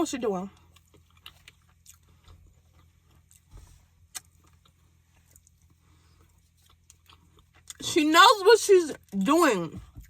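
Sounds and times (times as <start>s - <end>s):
steady low hum: 0.0s - 10.0s
person chewing food: 0.5s - 7.8s.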